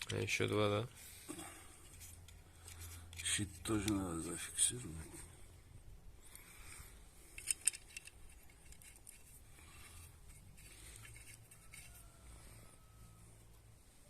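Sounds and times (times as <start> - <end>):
faint scraping: 6.3 - 13.4
small metal parts clinking: 7.2 - 12.1.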